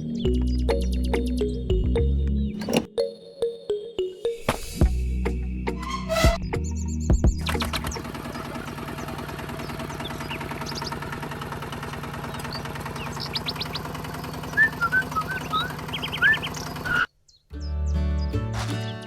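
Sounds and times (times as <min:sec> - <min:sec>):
small engine chugging: 0:07.4 - 0:17.1.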